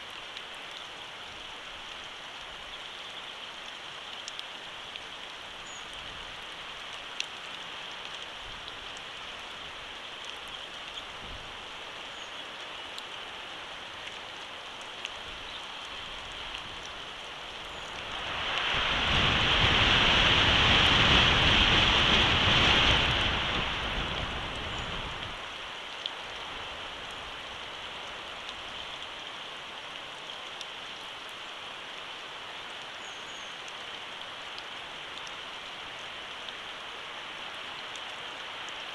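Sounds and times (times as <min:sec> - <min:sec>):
single raindrops ticking: 0:00.0 - 0:18.7, 0:24.1 - 0:31.4, 0:32.6 - 0:36.7
steady rain: 0:00.0 - 0:38.9
gust of wind: 0:18.2 - 0:25.4.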